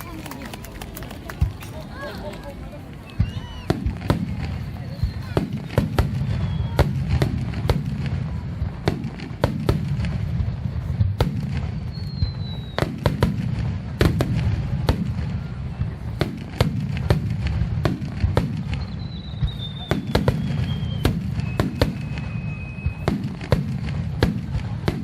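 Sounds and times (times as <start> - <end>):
fireworks bursting: 0.0 - 25.0.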